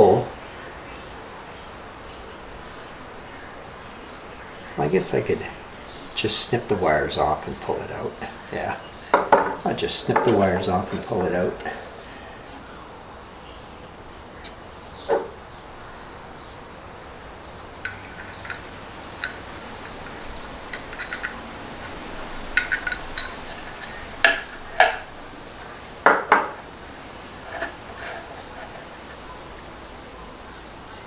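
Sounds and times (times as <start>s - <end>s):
metallic clicks and clinks of tools: 20.7s - 21.4s.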